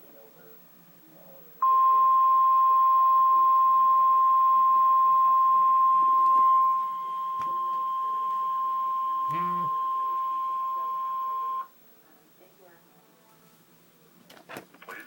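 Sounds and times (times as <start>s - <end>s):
emergency alert tone: 1.6s - 11.7s.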